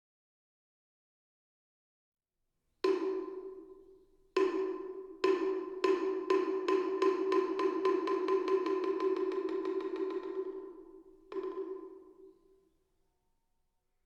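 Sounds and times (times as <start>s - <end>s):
wooden fish struck with mallet: 2.9s - 12.4s.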